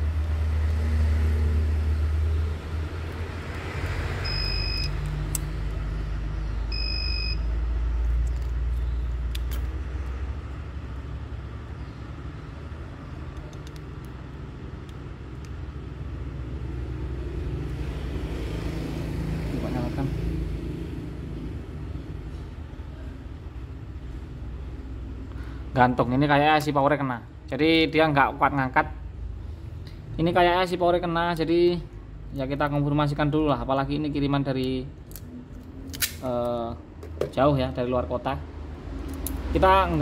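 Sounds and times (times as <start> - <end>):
short electronic beeps: 4.2 - 5.0, 6.7 - 7.5.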